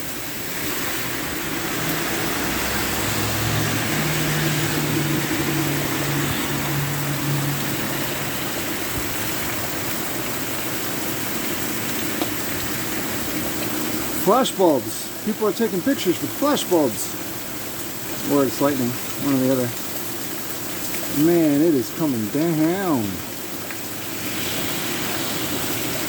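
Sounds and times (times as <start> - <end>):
heavy rain: 0.0 - 26.0
passing vehicle engine hum: 0.5 - 14.2, 24.0 - 26.0.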